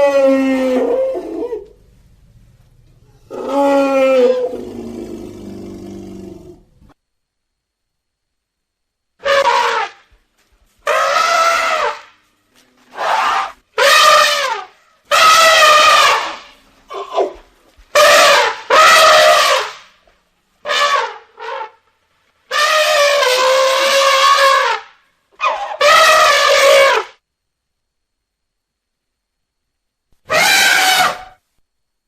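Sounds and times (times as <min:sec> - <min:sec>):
baby elephant trumpeting: 0:03.2 - 0:06.5, 0:09.2 - 0:10.1, 0:10.8 - 0:12.2, 0:12.9 - 0:19.9, 0:20.6 - 0:21.8, 0:22.5 - 0:27.2, 0:30.3 - 0:31.4.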